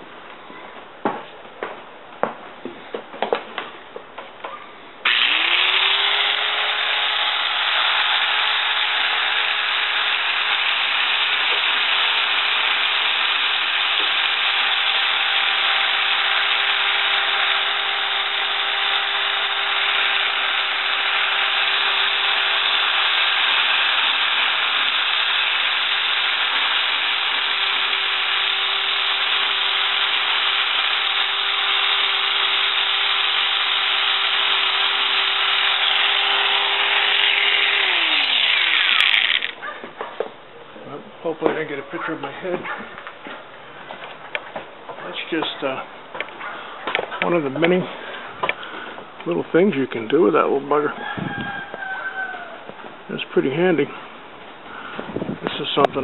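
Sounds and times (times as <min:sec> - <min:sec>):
belt sander motor whining: 0:05.0 - 0:39.6.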